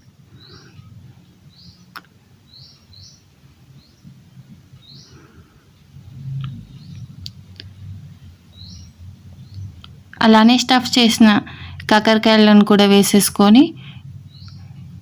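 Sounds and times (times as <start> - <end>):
faint low hum: 0.0 - 15.0
small bird chirping: 0.4 - 5.5, 6.5 - 10.0, 14.2 - 14.9.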